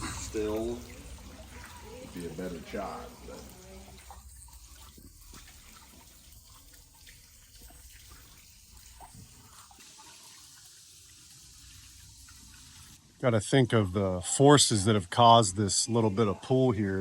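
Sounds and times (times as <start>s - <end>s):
water drips: 0.0s - 13.0s
stream trickling into pool: 0.0s - 17.0s.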